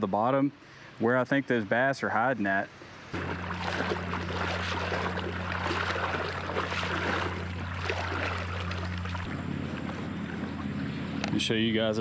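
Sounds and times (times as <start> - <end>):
steady low hum: 3.0 - 12.0
creek water running: 3.1 - 12.0.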